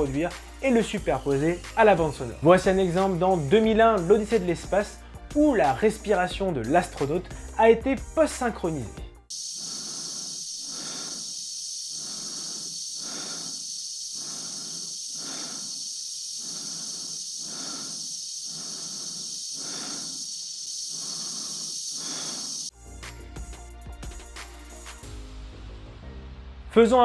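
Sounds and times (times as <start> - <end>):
steady high hiss: 0.0 - 7.3, 9.3 - 25.2
slow breathing in a helmet: 4.9 - 5.4, 7.3 - 7.6, 9.4 - 22.8.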